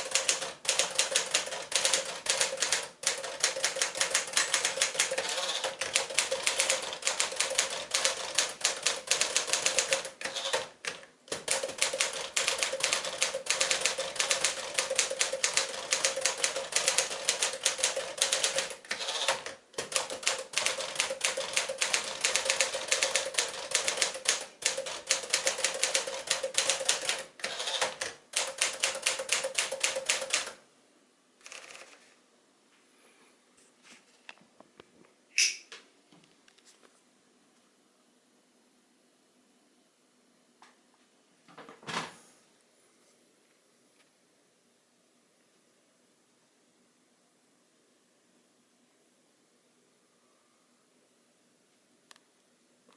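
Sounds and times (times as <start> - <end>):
typewriter key strikes: 0.0 - 18.7.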